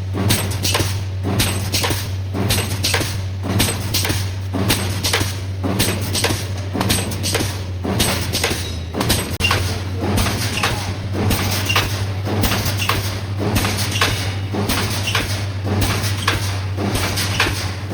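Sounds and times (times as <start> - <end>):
electrical hum: 0.0 - 17.9
welding machine clanking: 0.0 - 17.9.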